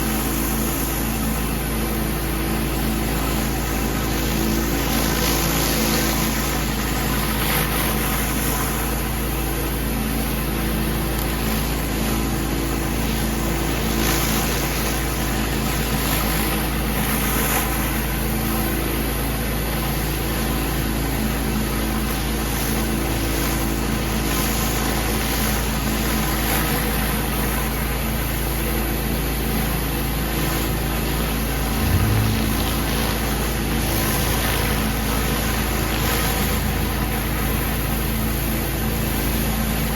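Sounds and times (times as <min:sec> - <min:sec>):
pressure washer engine drone: 0:00.0 - 0:39.9
low thump: 0:31.7 - 0:33.4.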